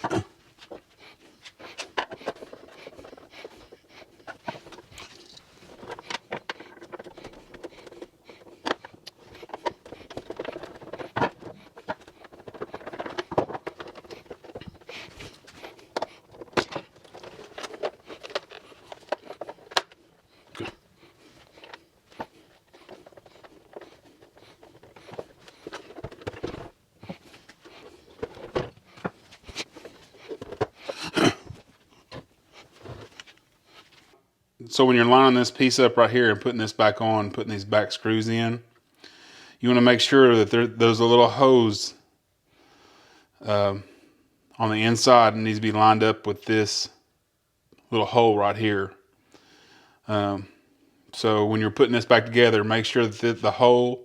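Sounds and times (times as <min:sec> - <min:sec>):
plastic parts clicking and scraping: 0:00.0 - 0:34.2.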